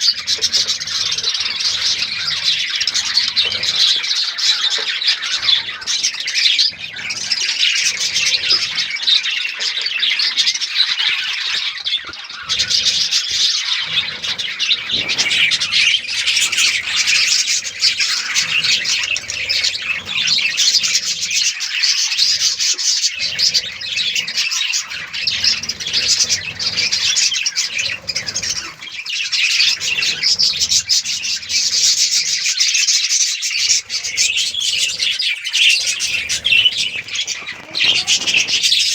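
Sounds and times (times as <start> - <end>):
bird squawks: 0.0 - 38.9
budgerigars chirping and chattering: 0.0 - 38.9.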